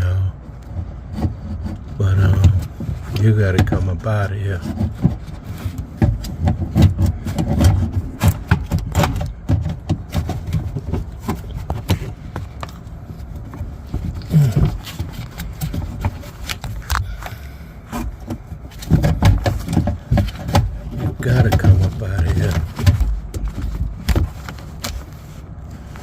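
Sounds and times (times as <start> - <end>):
hand tools prying at plastic clip: 14.2 - 25.0.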